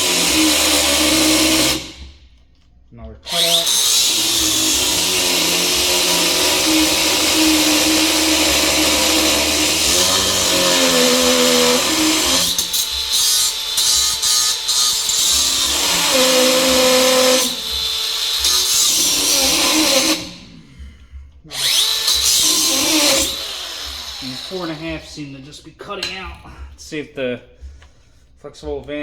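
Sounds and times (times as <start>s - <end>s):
angle grinder cutting steel: 0.0s - 2.0s, 3.2s - 20.5s, 21.5s - 25.2s.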